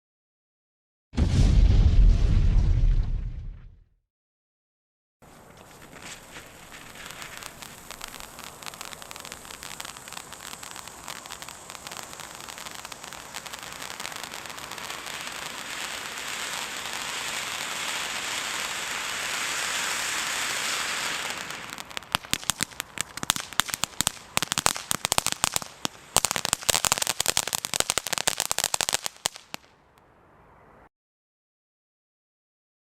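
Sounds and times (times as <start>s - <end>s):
firework crackling pops: 5.4s - 29.7s
firework fountain hissing: 5.9s - 29.6s.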